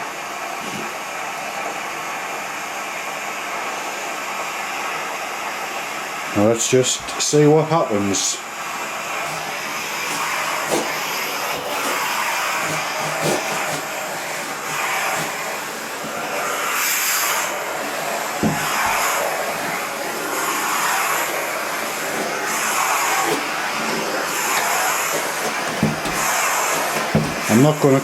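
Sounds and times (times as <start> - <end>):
steam cleaner hissing: 0.0 - 28.0.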